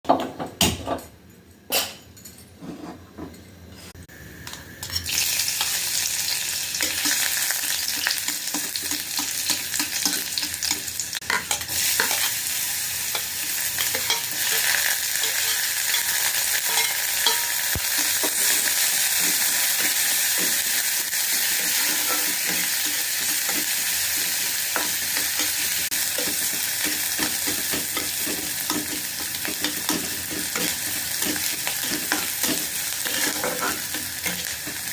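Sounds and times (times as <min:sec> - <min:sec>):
food sizzling in a hot pan: 0:04.1 - 0:34.9
spatula clicking and scraping: 0:26.2 - 0:34.9.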